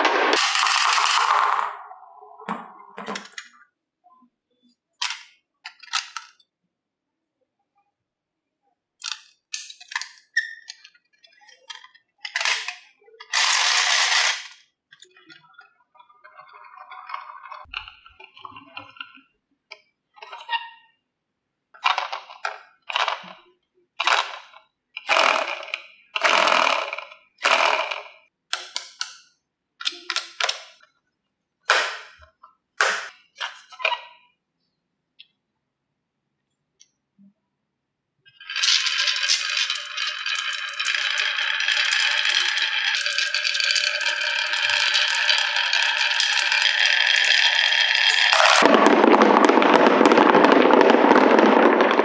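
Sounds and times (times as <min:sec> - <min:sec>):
marbles clattering down wooden run: 0:00.0 - 0:03.4, 0:12.3 - 0:14.6, 0:21.8 - 0:22.3, 0:22.9 - 0:23.4, 0:24.0 - 0:24.5, 0:25.1 - 0:29.2, 0:31.7 - 0:32.2, 0:32.8 - 0:33.7, 0:38.5 - 0:52.0
marble rolling: 0:00.0 - 0:03.6, 0:09.0 - 0:14.6, 0:21.8 - 0:23.4, 0:24.0 - 0:30.8, 0:31.7 - 0:32.2, 0:32.8 - 0:34.0, 0:38.4 - 0:52.0.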